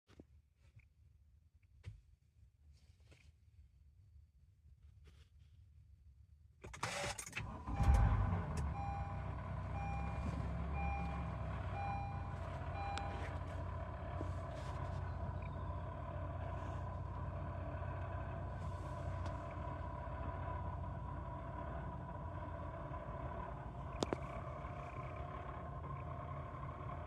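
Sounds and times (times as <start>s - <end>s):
car engine starting and idling: 6.7s - 27.0s.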